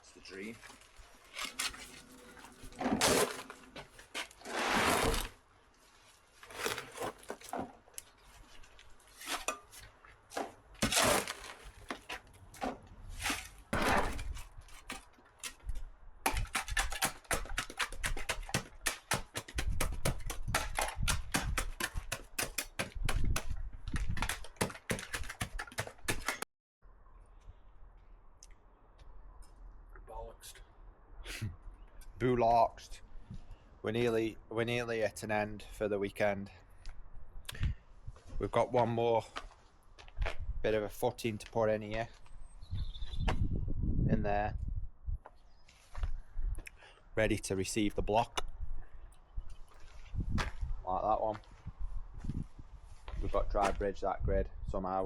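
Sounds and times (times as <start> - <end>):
metal tools scraping concrete: 1.2 - 5.4, 9.1 - 9.9, 10.8 - 12.2, 16.3 - 23.0.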